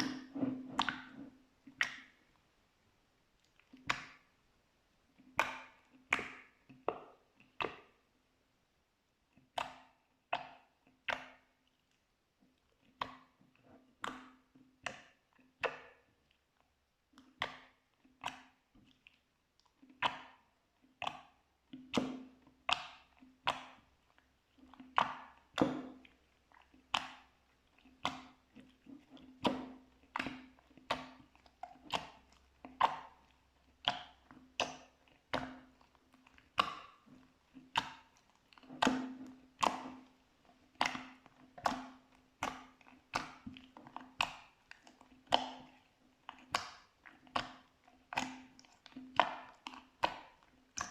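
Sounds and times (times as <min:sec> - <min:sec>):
slime wet clicking pops: 0:03.4 - 0:04.3, 0:05.3 - 0:08.0, 0:09.4 - 0:11.5, 0:14.0 - 0:15.9, 0:17.2 - 0:19.2, 0:20.0 - 0:23.8, 0:24.9 - 0:28.5, 0:29.4 - 0:50.9.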